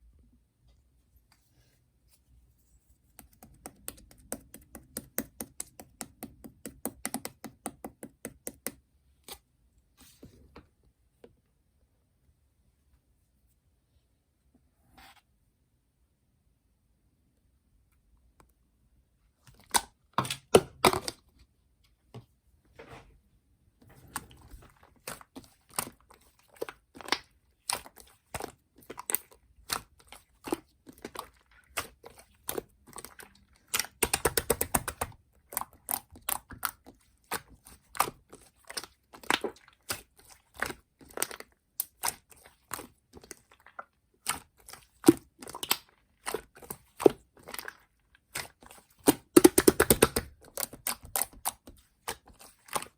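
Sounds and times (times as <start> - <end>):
sharp clicks and taps: 49.4 - 50.3.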